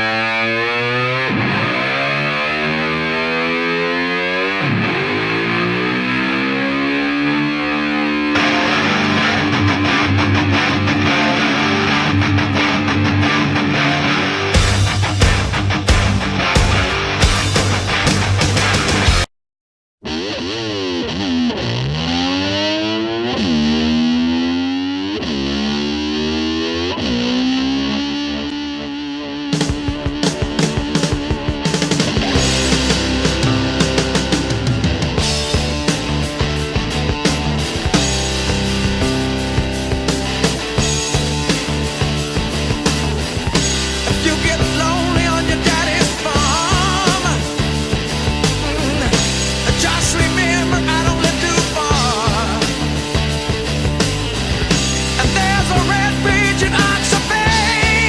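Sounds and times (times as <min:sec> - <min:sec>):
distorted electric slide guitar: 0:00.0 - 0:19.3, 0:20.0 - 0:58.0
strummed rhythm guitar: 0:00.0 - 0:19.3, 0:20.0 - 0:58.0.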